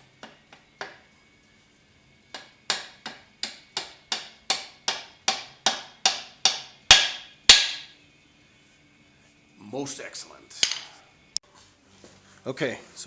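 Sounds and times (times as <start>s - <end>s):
hammer striking metal pin: 2.3s - 7.9s.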